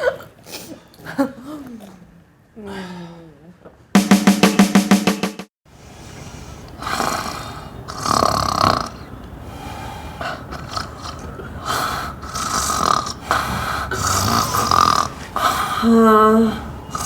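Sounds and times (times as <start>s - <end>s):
person snoring: 13.9s - 15.1s.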